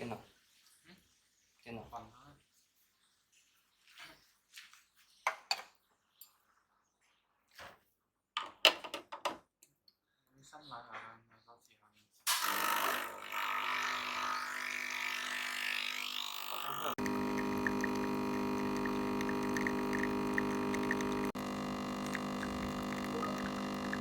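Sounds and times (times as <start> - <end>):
espresso machine droning buzz: 12.4 - 24.0
espresso machine hissing: 13.9 - 24.0.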